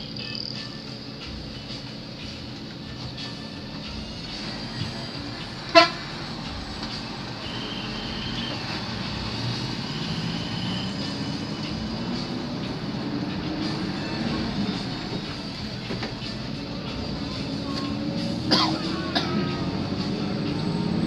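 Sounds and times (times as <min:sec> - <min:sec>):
bus engine and road noise: 0:00.0 - 0:21.0
bus horn toot: 0:04.2 - 0:16.2, 0:17.7 - 0:21.0.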